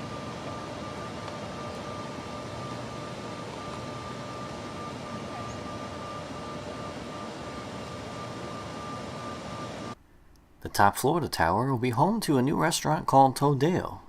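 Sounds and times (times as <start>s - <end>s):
thin high whine: 0.0s - 10.1s
steady background noise: 0.0s - 10.8s.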